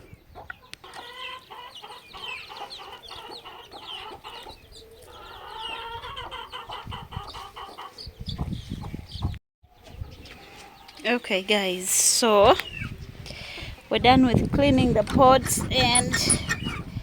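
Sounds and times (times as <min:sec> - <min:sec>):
hens clucking: 0:00.3 - 0:09.3, 0:14.8 - 0:17.0.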